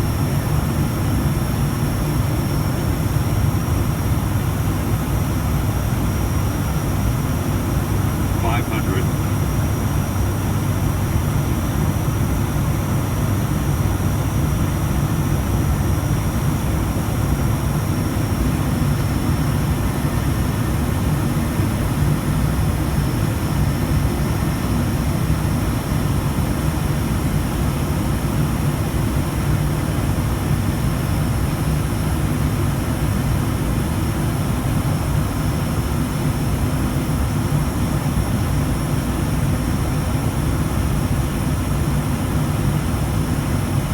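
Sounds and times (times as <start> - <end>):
propeller engine drone: 3.9 - 43.9
high whine: 8.4 - 9.4.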